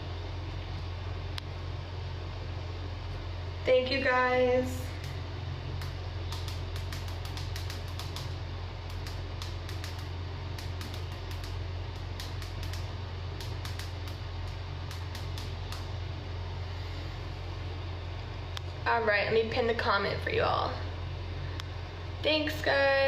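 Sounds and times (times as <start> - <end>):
steady low hum: 0.0 - 23.0
light irregular clicks: 5.8 - 15.9.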